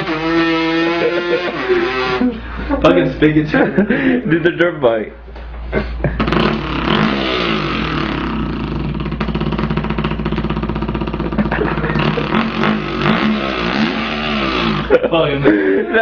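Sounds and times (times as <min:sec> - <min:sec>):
man imitating dirt bike engine: 0:00.0 - 0:02.4, 0:06.0 - 0:16.0.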